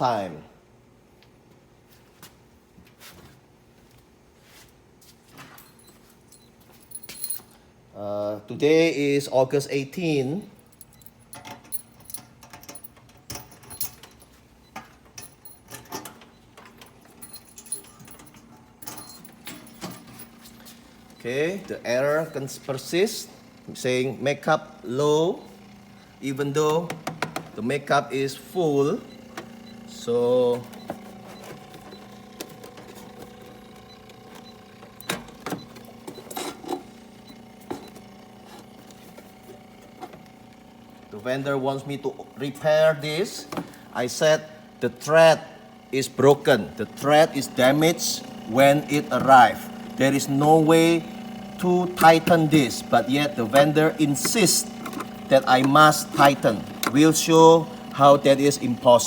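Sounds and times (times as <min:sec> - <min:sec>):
metallic clicks and clinks: 0:10.6 - 0:14.3, 0:16.8 - 0:20.3
printer mechanical hum: 0:18.6 - 0:59.0.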